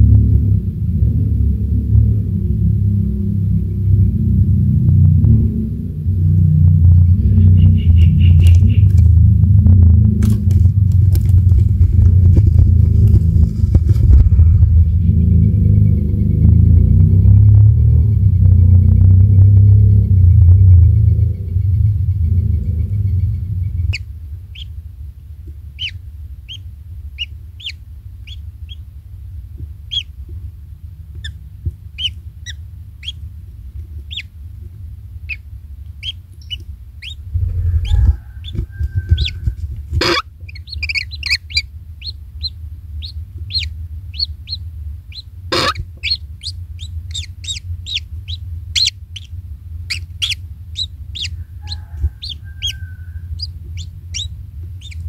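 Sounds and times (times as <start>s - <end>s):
steady low rumble: 0.0s - 55.0s
birds chirping: 7.0s - 9.4s, 10.1s - 17.3s, 19.2s - 24.8s, 25.5s - 28.9s, 29.6s - 30.4s, 31.1s - 34.5s, 35.1s - 55.0s
sharp bird calls: 7.2s - 9.2s, 21.1s - 24.8s, 25.7s - 28.9s, 29.8s - 30.2s, 31.2s - 33.3s, 34.0s - 34.4s, 35.2s - 55.0s.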